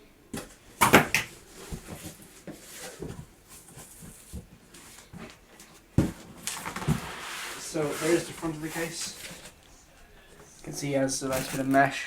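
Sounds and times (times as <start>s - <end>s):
packaging crackling and rustling: 10.5s - 12.0s.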